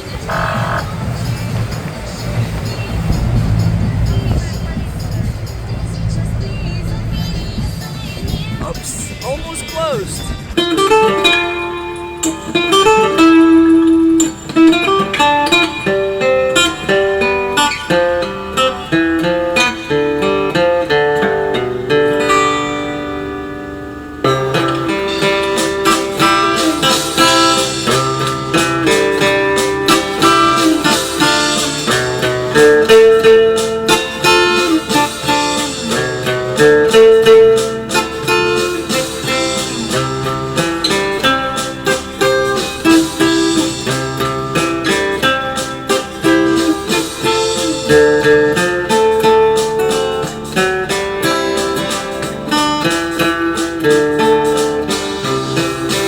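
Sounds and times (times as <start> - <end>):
acoustic guitar melody: 0.0 - 56.0.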